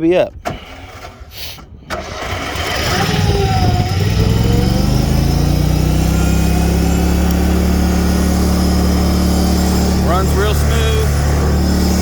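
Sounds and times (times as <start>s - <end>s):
mower engine running: 2.0s - 12.0s.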